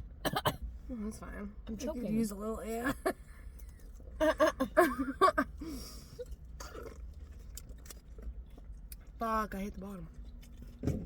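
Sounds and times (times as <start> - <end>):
chewing and mouth noises: 5.8 - 11.0.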